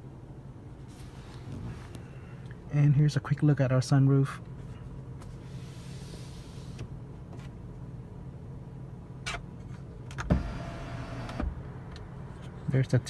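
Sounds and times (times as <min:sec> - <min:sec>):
low steady hum: 0:00.0 - 0:13.0
sunroof motor whine: 0:10.3 - 0:11.5.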